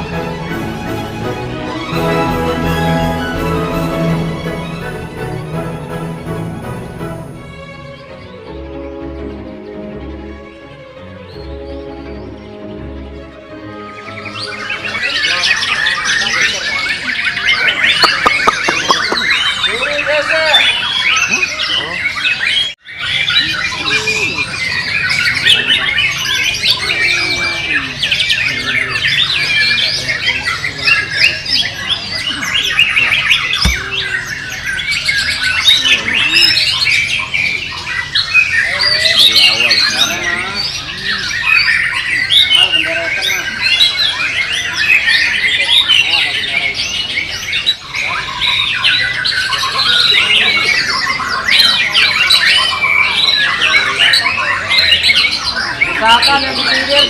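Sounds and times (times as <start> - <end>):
chorus of birds singing: 0.0 - 57.0
sharp thump: 33.6 - 34.1.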